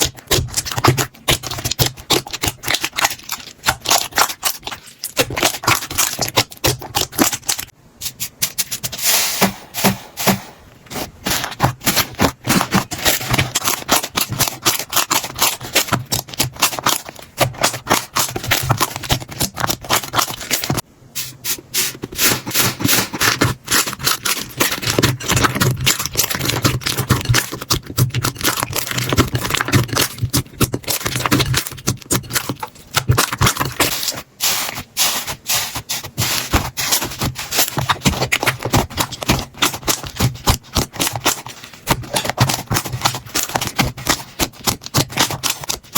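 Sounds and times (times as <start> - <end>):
slime squishing and crackling: 0.0 - 7.8, 10.9 - 20.8, 22.0 - 45.9.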